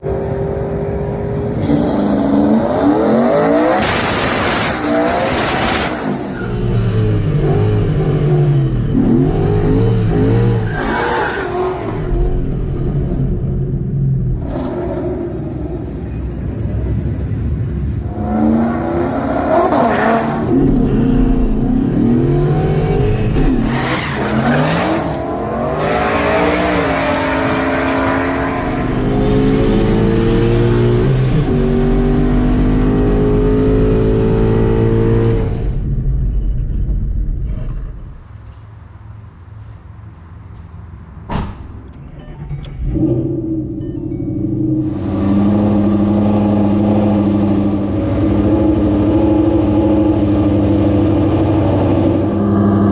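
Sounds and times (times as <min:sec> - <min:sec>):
car engine revving and accelerating: 0:00.0 - 0:35.8, 0:44.4 - 0:52.9
short bursts of rushing noise: 0:03.8 - 0:06.6.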